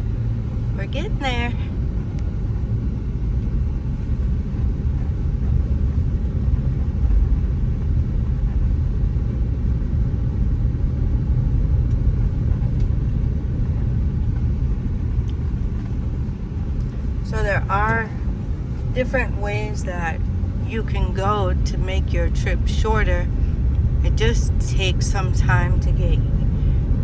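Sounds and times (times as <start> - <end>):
car road and engine rumble: 0.0 - 27.0.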